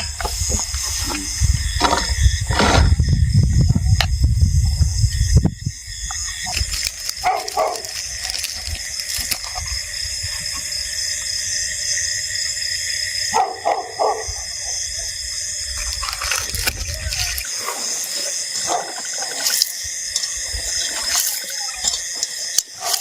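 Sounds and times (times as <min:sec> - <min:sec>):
night insects chirring: 0:00.0 - 0:23.0
dog barking: 0:07.2 - 0:07.9, 0:13.3 - 0:14.5, 0:18.6 - 0:19.0.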